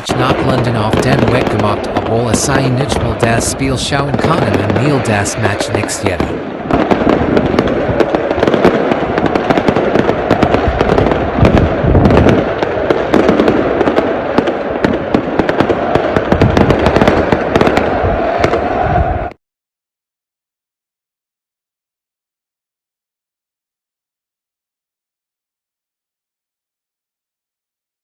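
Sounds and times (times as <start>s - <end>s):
continuous crackling: 0.0s - 19.0s
fireworks cracks and bangs: 0.0s - 19.0s.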